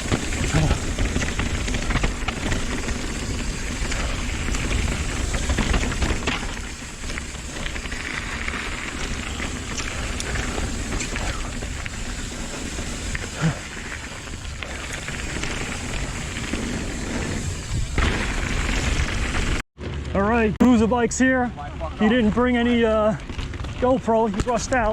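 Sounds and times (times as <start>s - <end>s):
bike rattling clicks: 0.0s - 19.6s
wind rush: 0.0s - 19.6s
bike tyre rumble: 0.0s - 24.9s.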